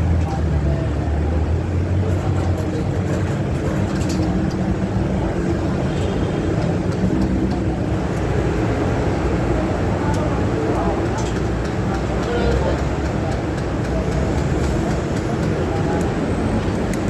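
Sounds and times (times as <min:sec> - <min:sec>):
light clicks and taps: 0:10.0 - 0:17.0.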